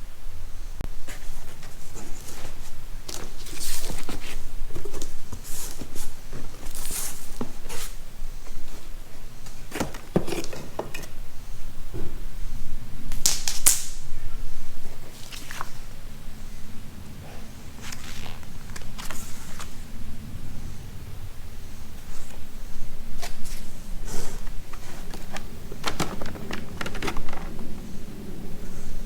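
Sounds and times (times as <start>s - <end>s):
scraping rustle: 0.9s - 11.6s, 17.4s - 19.9s, 22.0s - 29.0s
objects being handled: 1.0s - 11.3s, 23.2s - 28.0s.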